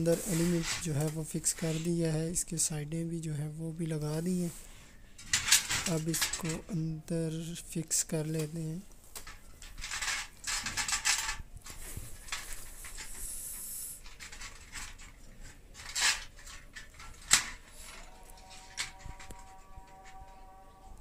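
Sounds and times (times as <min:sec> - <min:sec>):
heating rod scraping and clicking: 0:15.8 - 0:20.4.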